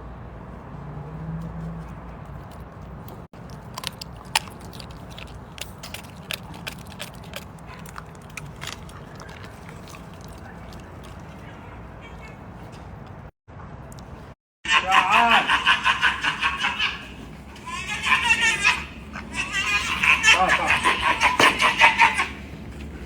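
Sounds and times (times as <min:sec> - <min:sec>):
animal crunching meat and bone: 0:01.8 - 0:13.3.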